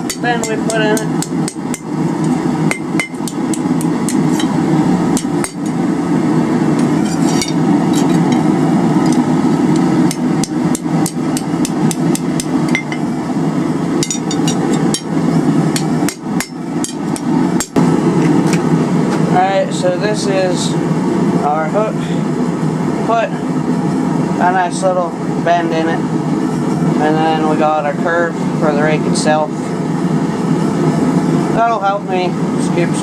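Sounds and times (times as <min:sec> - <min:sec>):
hammer striking steel on anvil: 0:00.0 - 0:05.7, 0:06.8 - 0:13.1, 0:14.0 - 0:15.1, 0:15.7 - 0:17.8
steady low drone: 0:00.0 - 0:31.6.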